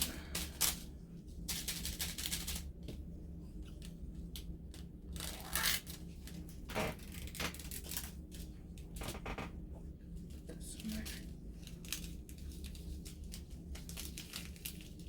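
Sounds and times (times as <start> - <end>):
steady low hum: 0.0 - 15.0
plastic crinkling: 5.1 - 9.5, 10.7 - 15.0.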